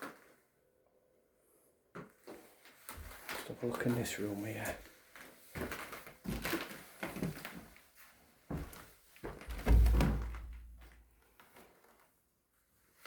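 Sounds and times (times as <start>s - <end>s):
knocks and footfalls in echoey room: 8.5s - 11.1s
heavy low thump: 9.5s - 10.9s.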